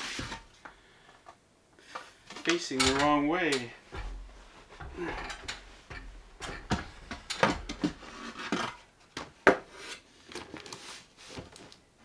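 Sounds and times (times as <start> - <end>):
wooden boards knocking and scraping: 2.8 - 9.7.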